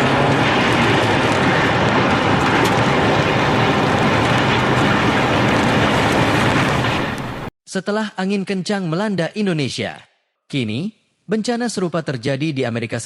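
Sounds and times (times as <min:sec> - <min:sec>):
strong wind on microphone: 0:00.0 - 0:07.5.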